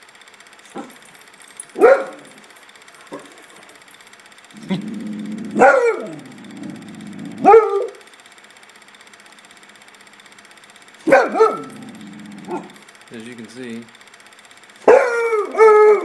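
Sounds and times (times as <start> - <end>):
dog barking: 1.8 - 2.3, 5.6 - 6.2, 7.4 - 8.0, 11.1 - 11.8, 12.4 - 12.8, 14.8 - 16.0
dog growling low: 4.6 - 7.5, 11.6 - 12.8.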